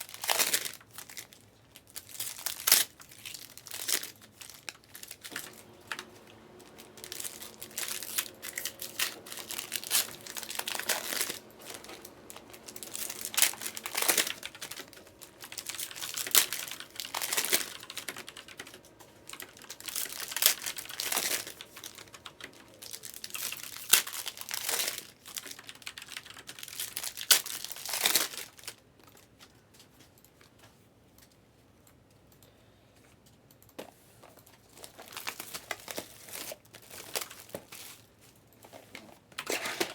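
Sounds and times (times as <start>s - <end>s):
foil wrappers crinkling and tearing: 0.0s - 25.8s, 26.4s - 29.3s
plastic wrap ripping: 2.0s - 22.2s.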